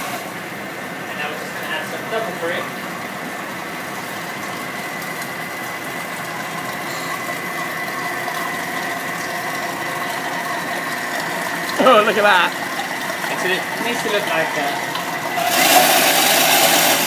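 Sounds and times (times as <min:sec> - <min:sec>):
blender motor whining: 0:05.9 - 0:17.0.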